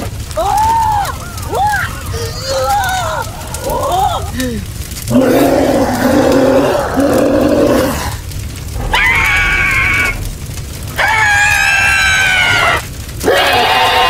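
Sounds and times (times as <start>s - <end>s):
girl's wordless vocal sounds: 2.0s - 4.7s.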